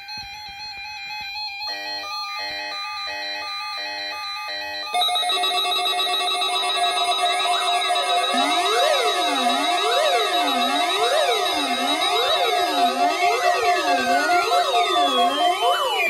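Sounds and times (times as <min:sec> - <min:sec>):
alarm tone sweeping in pitch: 0:05.0 - 0:16.0
chime-like beeps: 0:05.0 - 0:16.0
steady electronic tone: 0:05.0 - 0:16.0.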